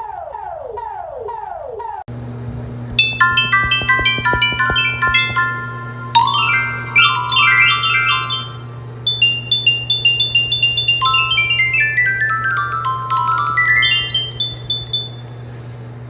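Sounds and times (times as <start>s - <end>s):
steady low hum: 2.1s - 16.0s
falling chime notes: 3.0s - 15.4s.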